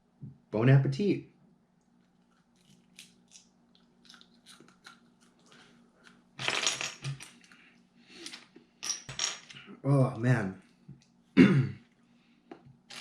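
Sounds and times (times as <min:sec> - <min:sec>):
pepper crunching: 0:01.9 - 0:06.2.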